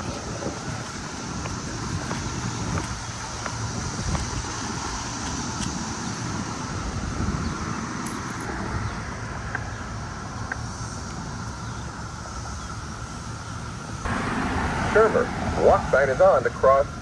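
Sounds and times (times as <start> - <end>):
wind on microphone: 0.0 - 9.2
road traffic passing: 0.0 - 17.0.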